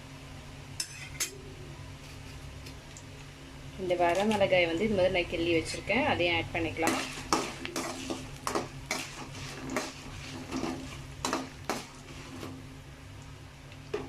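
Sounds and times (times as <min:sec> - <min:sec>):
food frying in oil: 0:00.7 - 0:14.0
spatula scraping a pan: 0:06.8 - 0:12.6.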